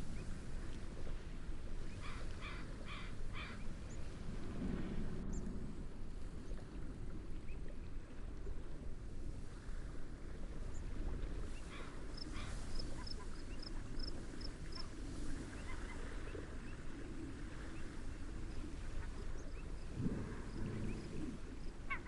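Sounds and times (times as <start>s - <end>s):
wind and waves: 0.0s - 22.0s
bird calls: 1.9s - 4.0s.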